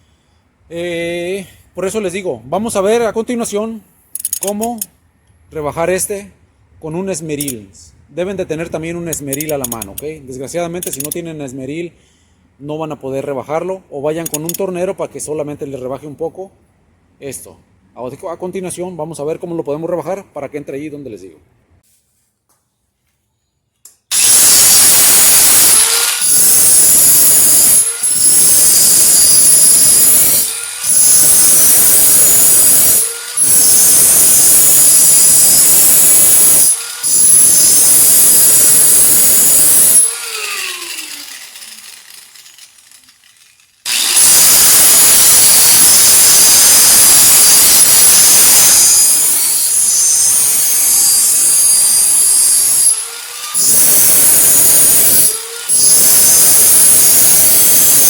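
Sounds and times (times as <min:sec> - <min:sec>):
electric grinder grinding steel: 0:24.1 - 0:58.0
grinder spinning down: 0:24.1 - 0:58.0.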